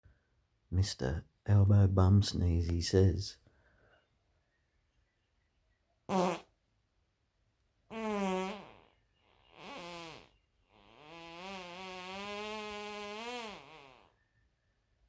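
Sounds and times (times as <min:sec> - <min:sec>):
pitched farts: 0:06.1 - 0:06.5, 0:07.9 - 0:08.9, 0:09.5 - 0:14.1.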